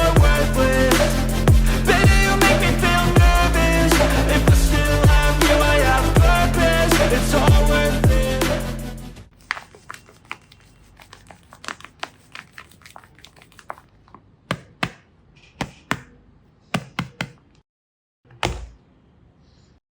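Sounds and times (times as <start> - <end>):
hands handling paper squishy: 9.3 - 14.3.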